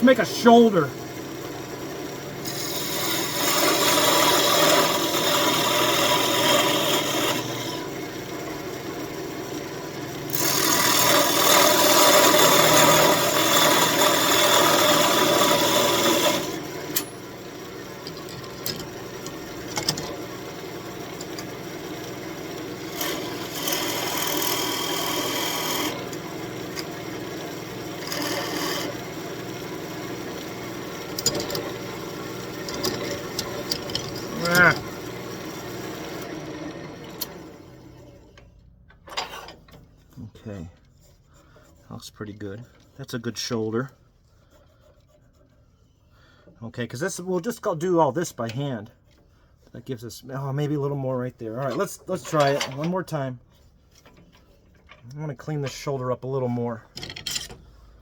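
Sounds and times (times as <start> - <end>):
parting tool scraping spinning wood: 0.0 - 1.0, 2.3 - 8.0, 10.1 - 36.4, 39.1 - 50.1, 50.7 - 54.9
lathe motor humming: 0.0 - 38.3.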